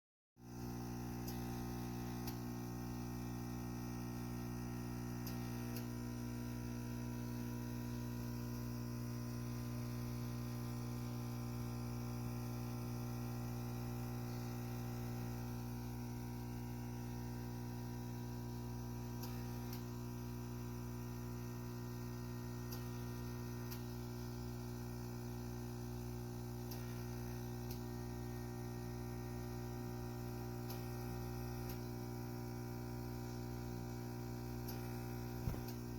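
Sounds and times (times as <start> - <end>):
electrical mains hum: 0.4 - 35.9
faint ticks: 23.6 - 23.9, 26.7 - 27.0, 34.6 - 35.8.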